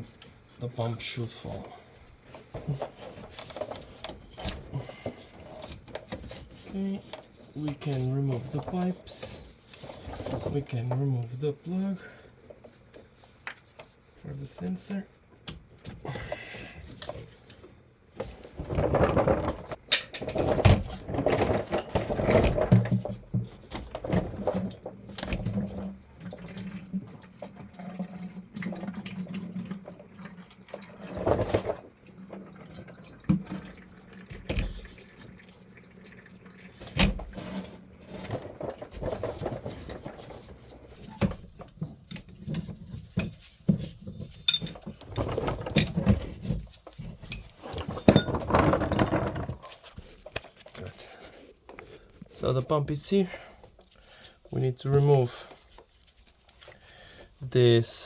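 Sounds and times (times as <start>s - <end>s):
tools knocking and scraping: 18.2s - 25.7s, 36.9s - 51.9s
fluid trickling: 26.0s - 37.4s.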